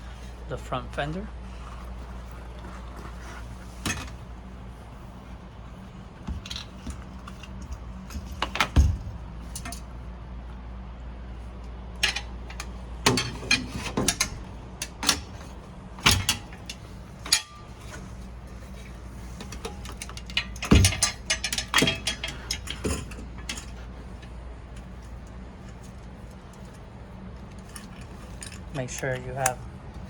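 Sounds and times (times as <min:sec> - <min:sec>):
steady low hum: 0:00.0 - 0:30.0
bicycle fender hardware clicking: 0:06.2 - 0:09.9, 0:12.0 - 0:26.8.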